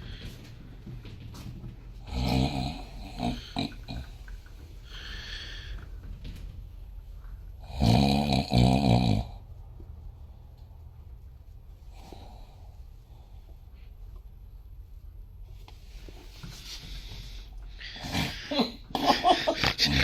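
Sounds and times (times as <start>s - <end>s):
man snoring: 2.0s - 4.2s, 7.6s - 9.4s, 17.9s - 18.7s
quiet breath: 2.8s - 6.5s, 9.9s - 18.5s.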